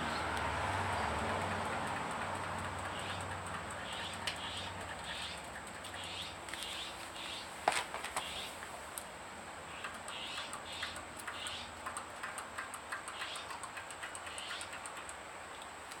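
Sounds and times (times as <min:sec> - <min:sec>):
exhaust leak ticking: 0:00.0 - 0:06.7, 0:09.7 - 0:16.0.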